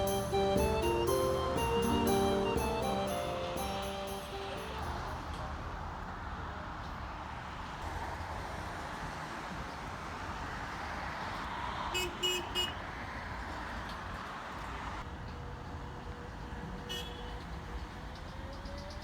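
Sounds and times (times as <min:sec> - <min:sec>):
passing road traffic: 0:00.0 - 0:19.0
car horn tooting: 0:12.0 - 0:12.8.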